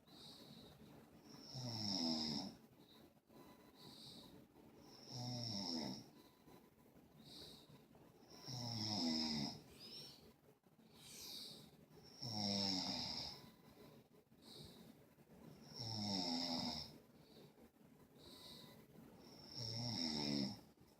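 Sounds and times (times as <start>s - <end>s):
soft breathing: 0.0s - 1.5s, 2.6s - 5.1s, 6.0s - 8.6s, 9.5s - 12.2s, 13.2s - 15.8s, 16.9s - 19.5s
person snoring: 4.9s - 6.1s, 8.3s - 9.6s, 12.1s - 13.4s, 15.6s - 17.0s, 19.2s - 20.6s.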